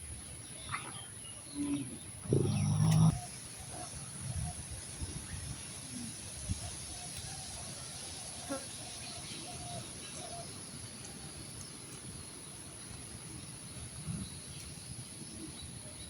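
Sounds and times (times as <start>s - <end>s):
calves snoring softly: 0.7s - 3.3s.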